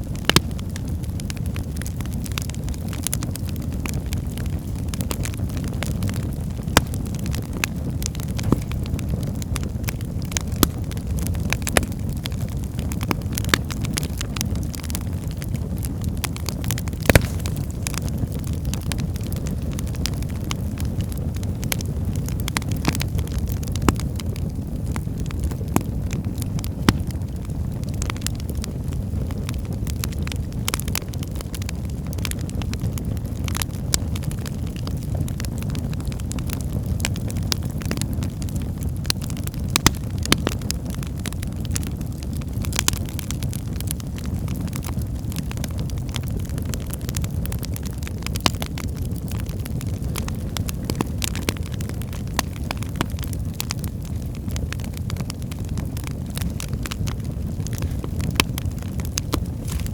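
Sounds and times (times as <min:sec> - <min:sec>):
crackles and pops of burning logs: 0:00.0 - 0:59.9
low rumble of flames: 0:00.0 - 0:59.9.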